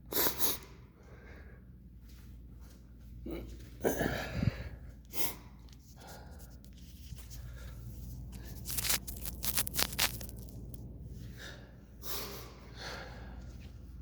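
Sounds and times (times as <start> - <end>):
low steady hum: 0.6 - 14.0
man breathing hard and sniffing: 11.2 - 13.8.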